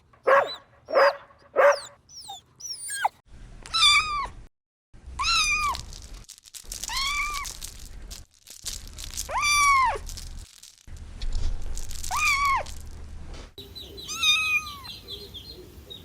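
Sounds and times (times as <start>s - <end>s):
kitten meowing: 3.7s - 4.3s, 5.2s - 5.8s, 14.1s - 14.9s.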